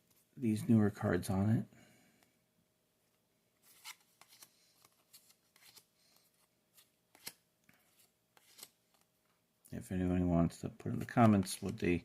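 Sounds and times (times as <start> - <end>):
trading cards ticking and rustling: 10.9 - 12.0.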